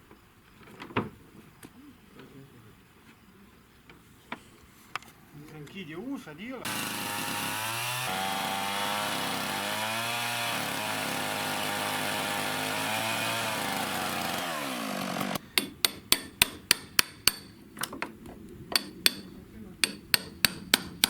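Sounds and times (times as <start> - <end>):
power tool motor running: 6.6 - 15.4.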